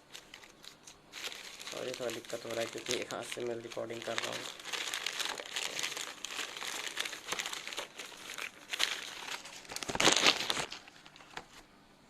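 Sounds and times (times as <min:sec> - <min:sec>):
packaging crinkling: 0:00.0 - 0:11.6.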